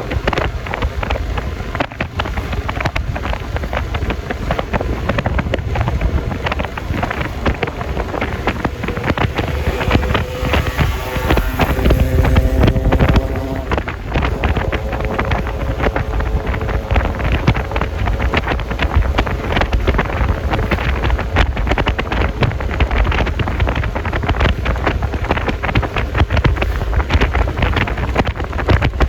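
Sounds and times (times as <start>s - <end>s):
scooter engine and road rumble: 0.0s - 29.0s
wind buffeting microphone: 0.0s - 29.0s
steady pitched tone: 5.7s - 20.6s.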